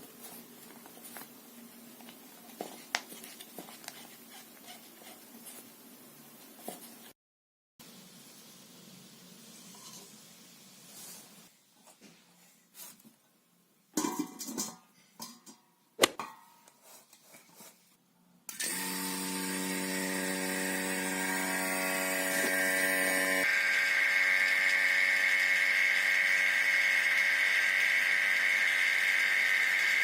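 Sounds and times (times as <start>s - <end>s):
small electric motor humming: 18.5s - 30.0s.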